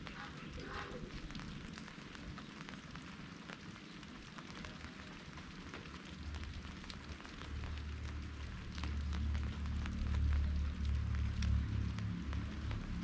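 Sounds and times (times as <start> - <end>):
light drizzle pattering: 0.0 - 13.0
low rumble: 7.6 - 13.0.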